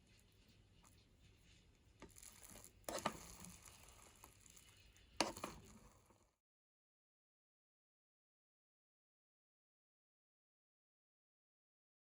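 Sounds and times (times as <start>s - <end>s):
rustling and crinkling: 0.0s - 6.2s.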